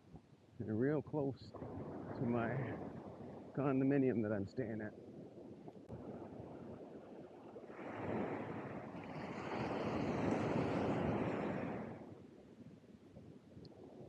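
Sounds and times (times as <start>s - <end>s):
ocean wave breaking on beach: 1.5s - 4.9s, 5.9s - 12.2s.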